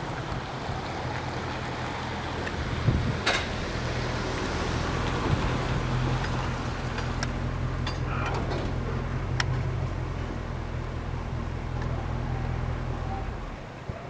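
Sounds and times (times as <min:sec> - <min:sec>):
storm wind and rain: 0:00.0 - 0:14.0.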